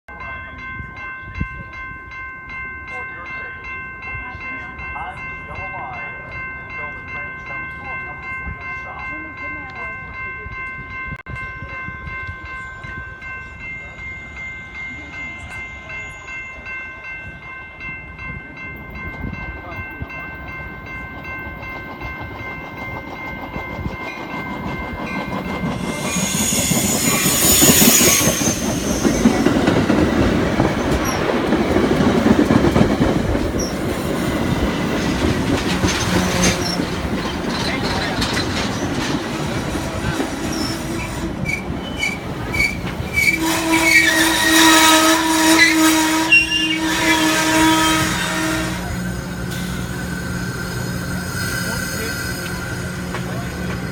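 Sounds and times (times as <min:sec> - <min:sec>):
train passing rumble: 0:00.1 - 0:53.9
wheels clattering on rails: 0:18.0 - 0:45.0, 0:48.1 - 0:53.9
train horn chord: 0:43.4 - 0:49.9.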